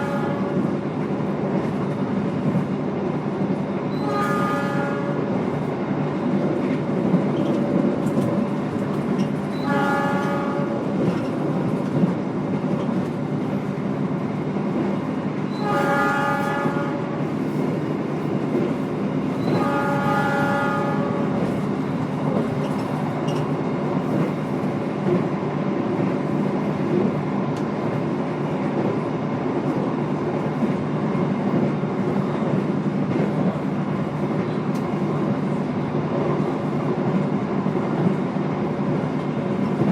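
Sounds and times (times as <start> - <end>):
train horn: 0.0 - 0.7, 3.9 - 5.4, 9.5 - 11.0, 15.5 - 17.3, 19.4 - 21.6
train running rumble: 0.0 - 39.9.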